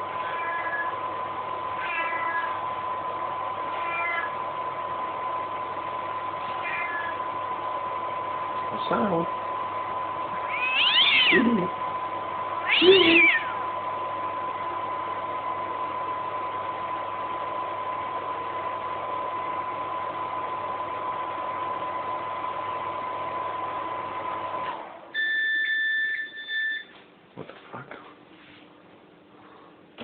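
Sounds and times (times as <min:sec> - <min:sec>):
microwave oven humming: 0:00.0 - 0:30.0
kitten meowing: 0:00.1 - 0:00.9, 0:01.8 - 0:02.6, 0:03.8 - 0:04.4, 0:06.5 - 0:07.2, 0:10.4 - 0:11.5, 0:12.6 - 0:13.6
steady beep: 0:25.2 - 0:26.9.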